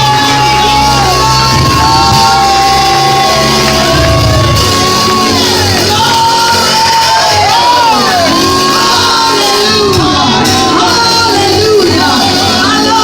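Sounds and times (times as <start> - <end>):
low instrumental accompaniment: 0.0 - 13.0
voices singing worship music: 0.0 - 13.0.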